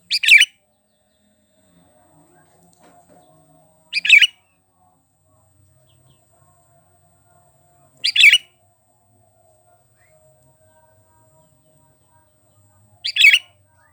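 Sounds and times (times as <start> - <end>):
bird calls: 0.0 - 0.6, 3.9 - 4.4, 8.0 - 8.5, 13.0 - 13.5.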